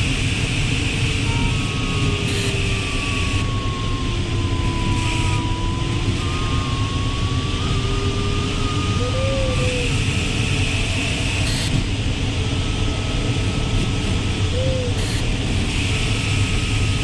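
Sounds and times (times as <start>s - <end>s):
airflow rushing in cockpit: 0.0s - 17.0s.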